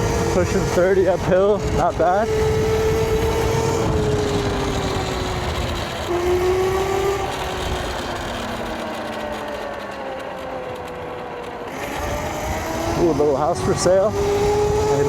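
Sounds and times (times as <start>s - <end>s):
wind rumble on microphone: 0.0s - 8.8s, 11.8s - 15.0s
electric motor whining: 0.0s - 15.0s.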